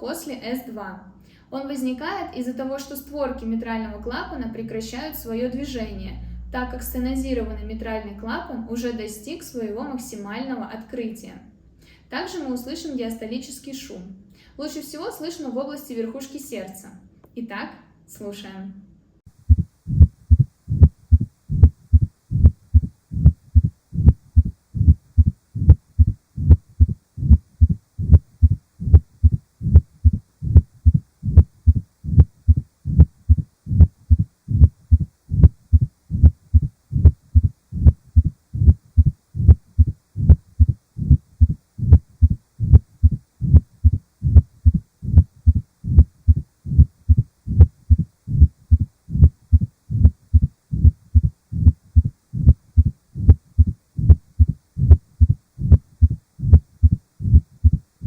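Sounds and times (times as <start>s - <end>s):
heartbeat through stethoscope: 19.4s - 57.9s.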